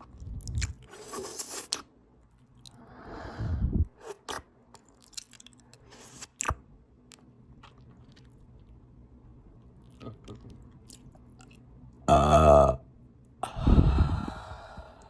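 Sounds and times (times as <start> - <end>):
open-mouth chewing: 0.0 - 2.8, 4.1 - 8.9, 9.6 - 11.8
low breathy rush: 2.8 - 4.0, 13.4 - 15.0.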